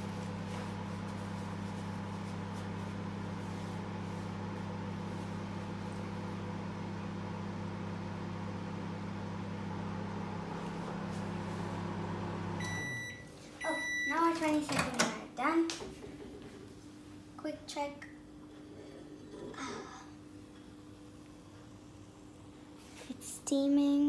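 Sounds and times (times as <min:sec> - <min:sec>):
microwave oven humming: 0:00.0 - 0:24.0
microwave timer beep: 0:12.3 - 0:14.4.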